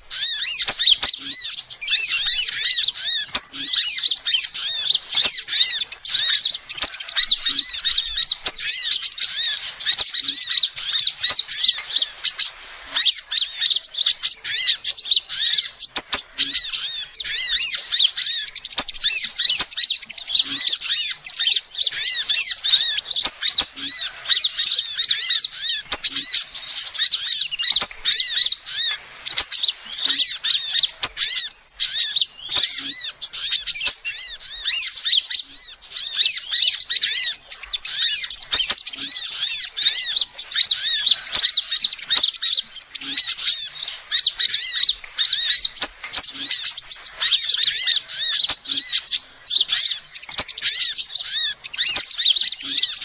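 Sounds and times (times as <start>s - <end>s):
sunbird chirping: 0.0s - 53.0s.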